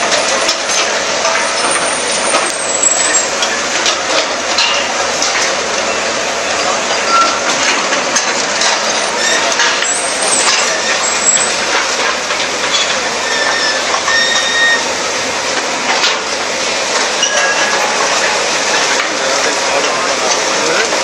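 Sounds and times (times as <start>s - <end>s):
high metallic squeaks: 1.2s - 3.4s, 7.0s - 7.5s, 8.9s - 11.6s, 12.7s - 14.9s, 17.2s - 17.8s.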